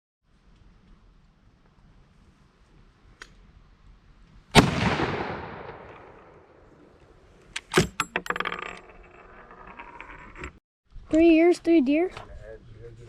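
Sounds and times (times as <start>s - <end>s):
rifle shot: 4.5s - 6.6s.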